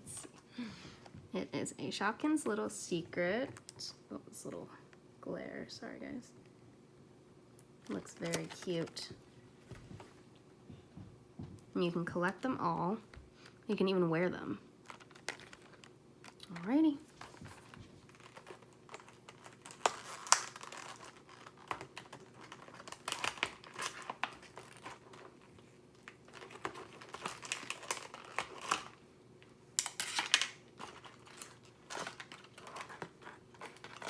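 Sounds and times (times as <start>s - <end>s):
plastic packaging crinkling and tearing: 7.8s - 9.2s, 14.8s - 29.0s, 29.8s - 34.0s.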